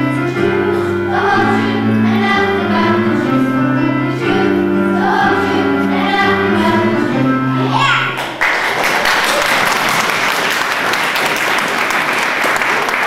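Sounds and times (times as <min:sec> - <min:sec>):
choir singing: 0:00.0 - 0:07.8.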